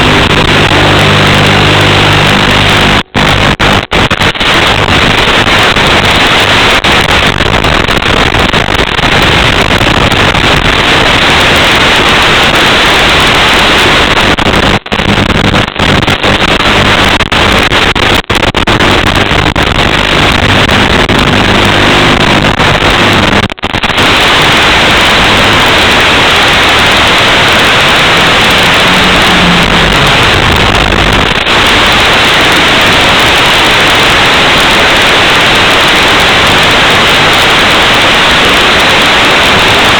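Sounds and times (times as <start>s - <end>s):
loud hiss: 18.6s - 39.9s
drone motors buzzing: 26.7s - 31.4s.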